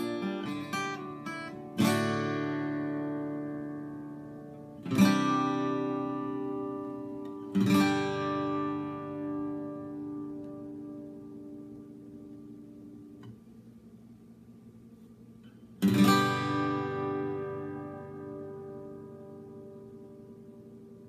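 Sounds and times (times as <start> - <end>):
acoustic guitar strummed chords: 0.0 - 13.5, 15.5 - 21.0
acoustic guitar picked notes: 0.0 - 21.0.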